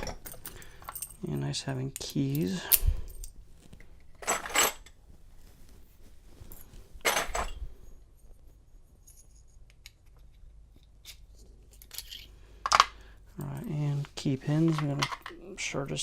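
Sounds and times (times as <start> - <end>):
metal lock pins clinking: 0.0 - 3.4, 4.1 - 5.0.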